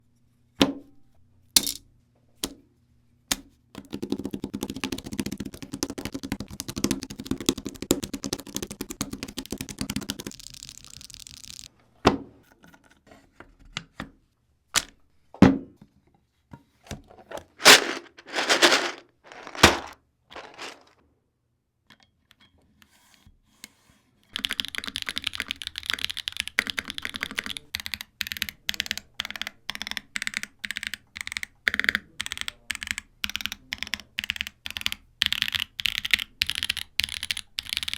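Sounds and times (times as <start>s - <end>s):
rapid keyboard typing: 3.8s - 11.7s, 24.4s - 37.9s.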